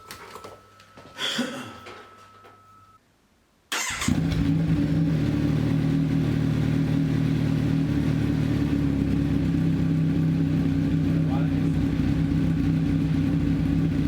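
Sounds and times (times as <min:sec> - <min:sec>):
motorcycle engine idling loudly: 0:04.5 - 0:14.0.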